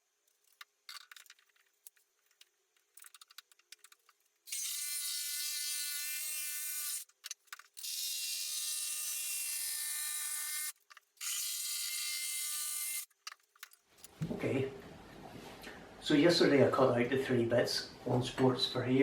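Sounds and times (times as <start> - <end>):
small clicks: 0.2 - 4.4.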